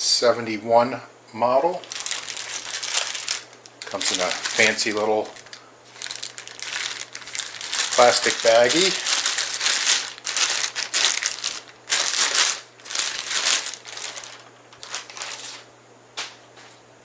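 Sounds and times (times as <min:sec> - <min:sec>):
plastic bag crinkling: 0:01.8 - 0:15.7.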